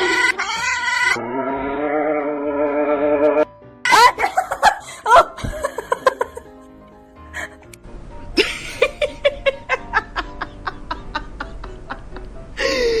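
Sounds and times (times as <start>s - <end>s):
person laughing: 3.9s - 6.5s, 8.4s - 13.0s.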